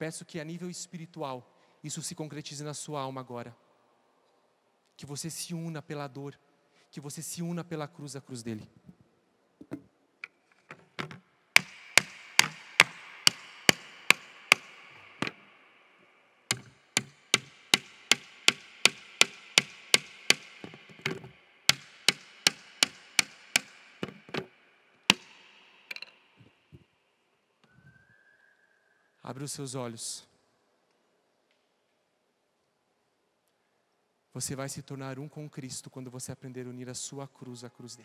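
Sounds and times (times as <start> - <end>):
hammer driving nails into wood: 9.6 - 15.6, 16.5 - 26.2.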